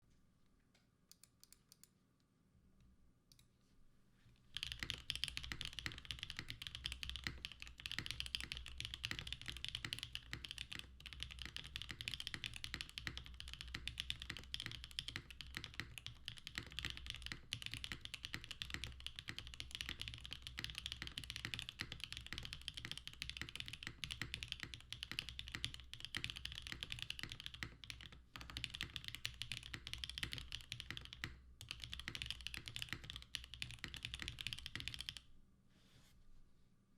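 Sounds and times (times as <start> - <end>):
typing on mechanical keyboard: 4.6 - 35.2.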